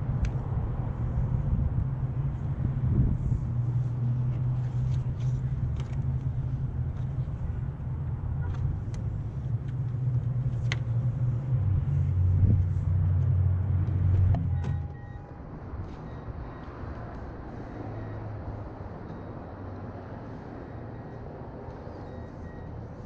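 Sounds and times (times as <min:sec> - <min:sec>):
vehicle engine rumbling: 0:00.0 - 0:23.0.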